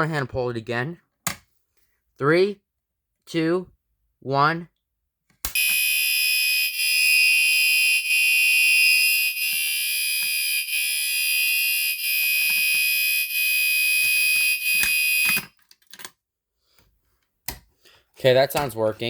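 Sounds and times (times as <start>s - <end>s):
fire alarm horn buzzing: 5.6s - 15.5s.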